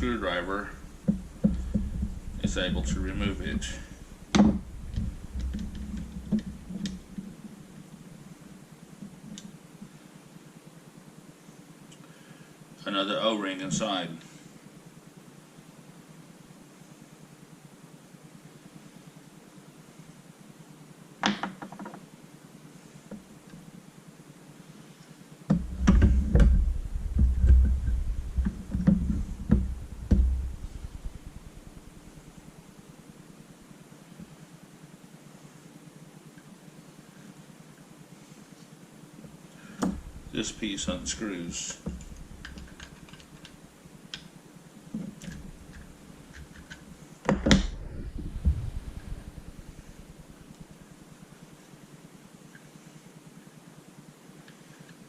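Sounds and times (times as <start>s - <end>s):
low handling rumble: 0.0s - 8.4s, 25.6s - 33.7s, 39.8s - 43.7s, 47.4s - 51.0s
louder knock: 25.5s - 31.2s
sharp clicks and knocks of parts: 41.7s - 44.3s, 44.9s - 47.7s.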